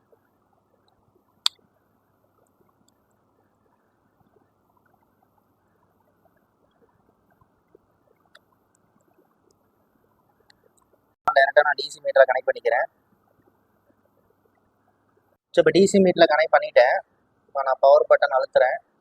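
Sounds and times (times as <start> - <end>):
low steady hiss: 0.0 - 19.0.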